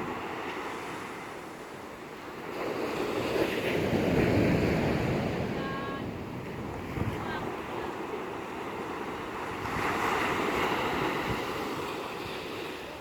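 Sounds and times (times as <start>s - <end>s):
wind blowing across microphone: 0.0s - 13.0s.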